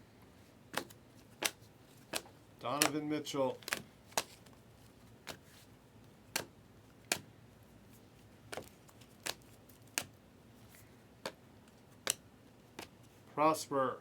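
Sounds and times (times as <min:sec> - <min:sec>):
cards clicking and tapping: 0:00.7 - 0:05.6, 0:06.3 - 0:07.3, 0:08.4 - 0:13.1.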